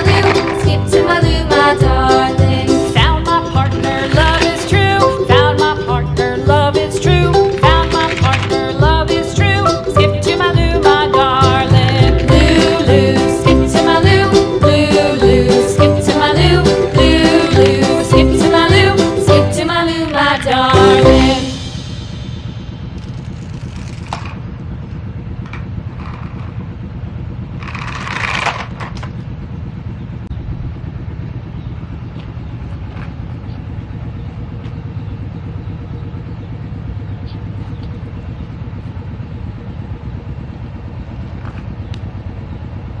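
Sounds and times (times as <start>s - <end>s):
vehicle engine idling: 0.0s - 43.0s
brief loud clatter: 22.9s - 24.5s, 27.6s - 29.2s.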